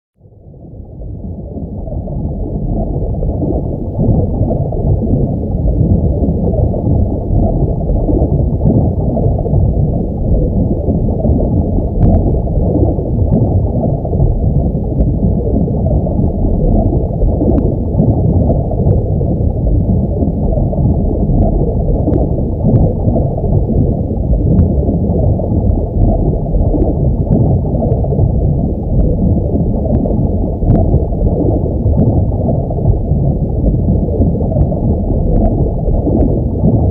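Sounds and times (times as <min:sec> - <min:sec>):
muffled underwater rush and gurgle: 0:00.2 - 0:36.9.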